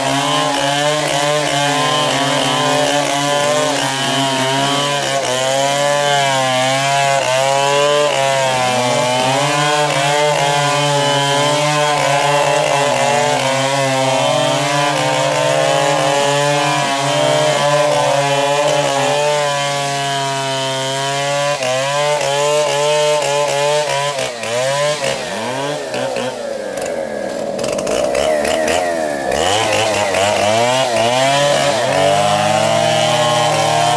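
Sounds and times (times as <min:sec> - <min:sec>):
chainsaw cutting wood: 0:00.0 - 0:33.9.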